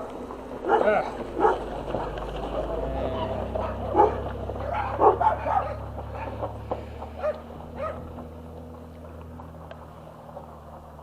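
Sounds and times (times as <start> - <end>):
dog barking and yipping: 0.6 - 2.2, 3.4 - 6.5, 7.1 - 8.2.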